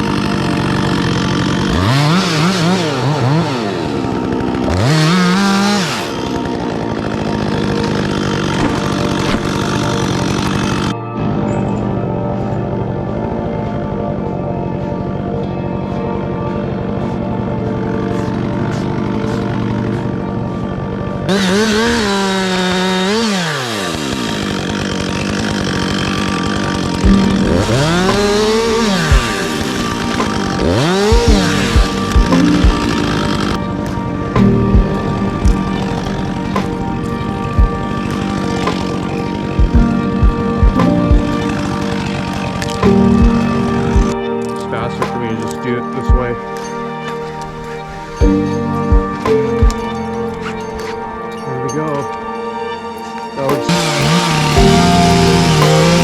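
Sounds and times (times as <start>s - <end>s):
chainsaw engine idling and revving: 0.0s - 10.9s, 18.3s - 20.2s, 21.3s - 44.2s, 53.5s - 56.0s.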